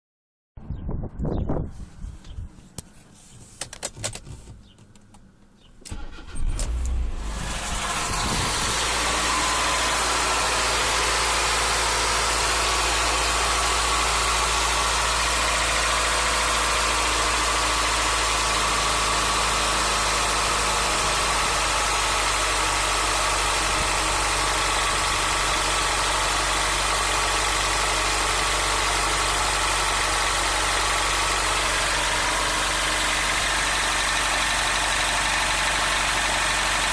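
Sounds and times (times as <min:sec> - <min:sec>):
car engine cranking and idling: 0:02.8 - 0:36.9.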